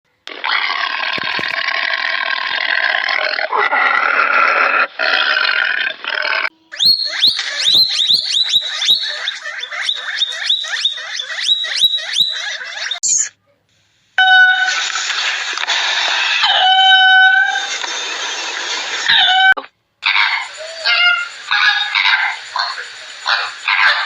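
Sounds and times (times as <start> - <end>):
harsh raspy animal calls: 0.3 - 13.1, 20.0 - 24.0
sharp high downward chirps: 6.5 - 13.3.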